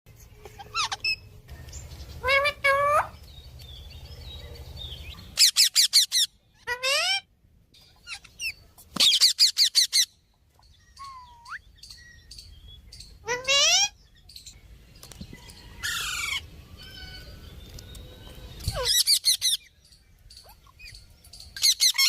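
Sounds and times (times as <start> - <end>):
parrot calling and whistling: 0.5 - 1.3, 5.4 - 7.3, 10.9 - 12.3, 13.1 - 14.0, 18.6 - 19.7.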